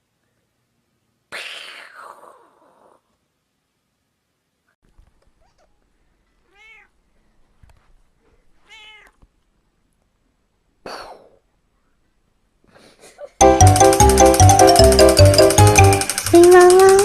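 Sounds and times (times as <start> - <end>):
cat meowing: 5.4 - 5.8, 6.4 - 7.0, 8.6 - 9.2.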